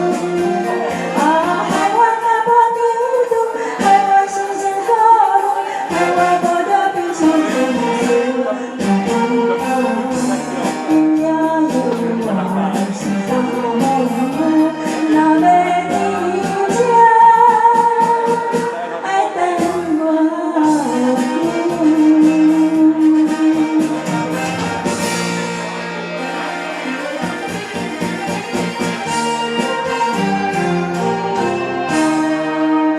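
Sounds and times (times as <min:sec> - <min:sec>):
woman singing: 0:00.0 - 0:24.2
karaoke backing track with drums: 0:00.0 - 0:32.9.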